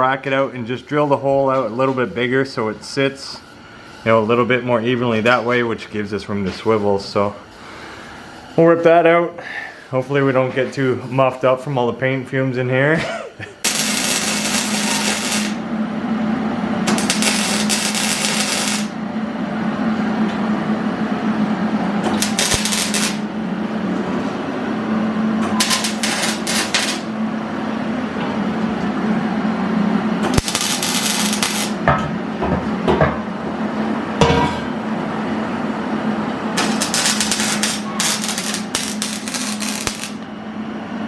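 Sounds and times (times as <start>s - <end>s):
air compressor motor hum: 13.6s - 41.0s.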